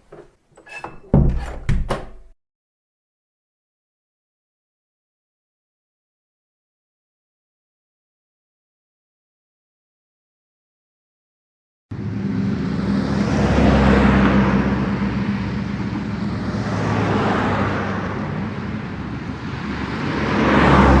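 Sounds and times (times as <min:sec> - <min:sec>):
low engine hum: 0:11.9 - 0:21.0
vehicles passing: 0:11.9 - 0:21.0.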